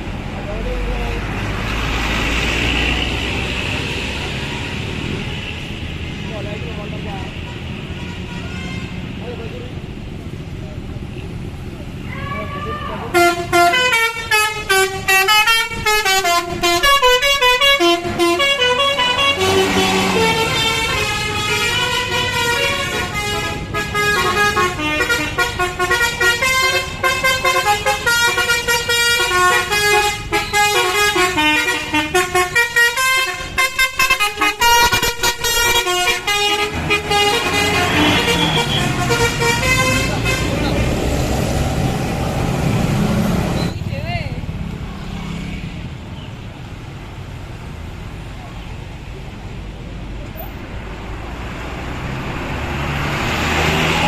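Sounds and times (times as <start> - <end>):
bus horns playing tunes: 7.4 - 9.1, 13.0 - 41.1.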